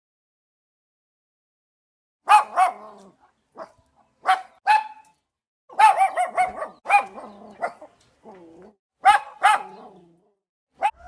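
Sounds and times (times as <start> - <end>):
dog barking: 2.2 - 5.1, 5.7 - 8.0, 9.0 - 10.2, 10.8 - 11.0.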